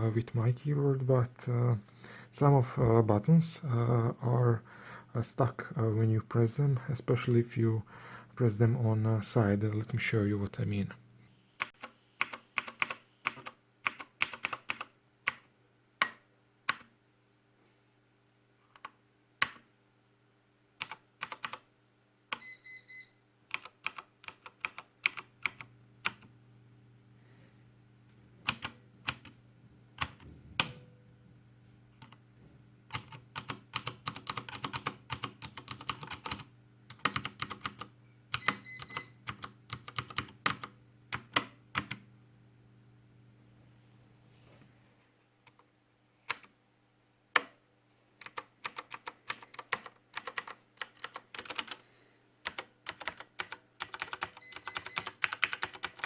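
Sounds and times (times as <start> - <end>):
faint steady hum: 0.0 - 56.0
mechanical keyboard keys clicking: 11.6 - 15.4, 20.8 - 21.6, 23.5 - 26.3, 28.4 - 29.4, 32.9 - 42.0, 48.2 - 51.8, 52.4 - 56.0.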